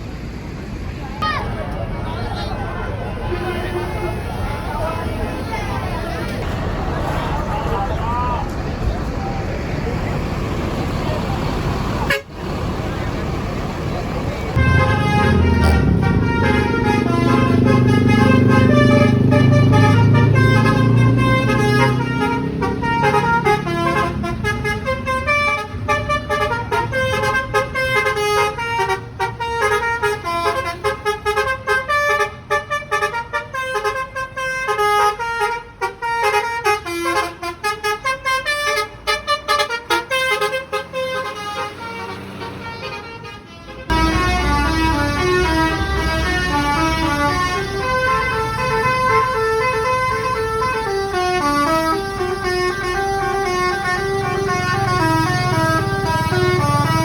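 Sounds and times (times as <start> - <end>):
bus engine rumble: 0.0 - 57.0
musical air horn tunes: 14.6 - 31.2, 33.1 - 57.0.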